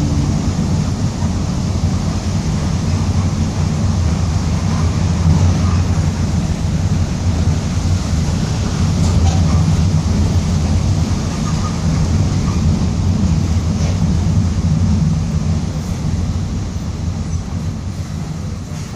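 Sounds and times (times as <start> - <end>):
bus diesel engine drone: 0.0 - 18.9.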